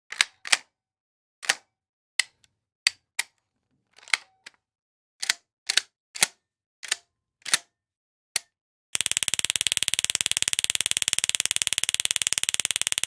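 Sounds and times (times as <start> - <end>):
sharp metal clicks: 9.0 - 13.0.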